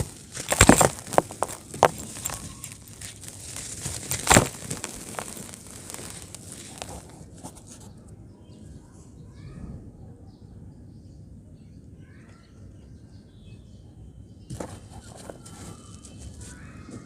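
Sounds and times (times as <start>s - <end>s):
dried clay crunching and snapping: 0.0s - 7.8s, 14.5s - 17.0s.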